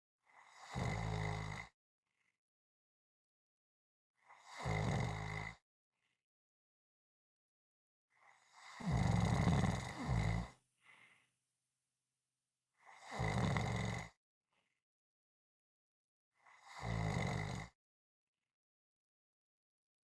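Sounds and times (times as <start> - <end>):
loud snoring: 0.3 - 1.8, 4.3 - 5.6, 8.3 - 10.6, 12.8 - 14.2, 16.5 - 17.8
faint breath: 10.8 - 11.4.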